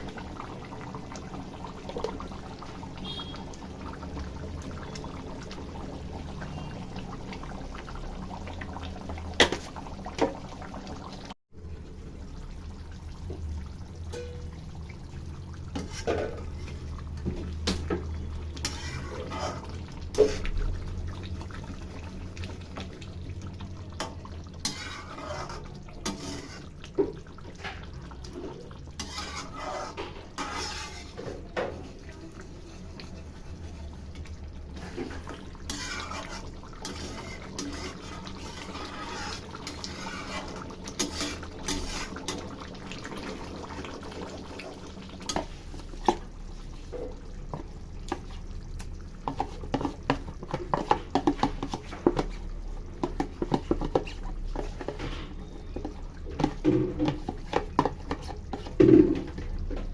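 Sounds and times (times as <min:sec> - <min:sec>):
metal spoon scraping in pot: 0:18.6 - 0:20.5, 0:24.6 - 0:26.8, 0:28.9 - 0:31.3, 0:34.8 - 0:42.4.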